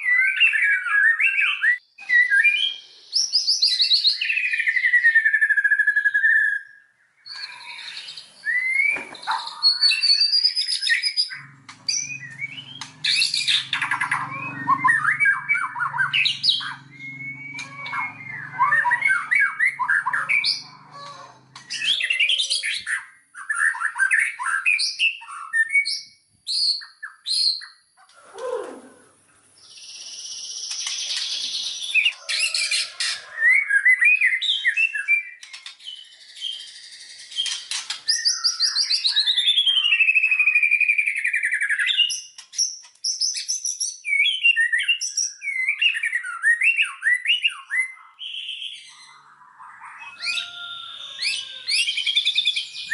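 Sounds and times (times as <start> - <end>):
bird whistled song: 0.0 - 28.9, 29.6 - 52.9
falling bird trill: 7.3 - 23.0, 49.6 - 52.9
harsh buzzing bird note: 11.3 - 22.2.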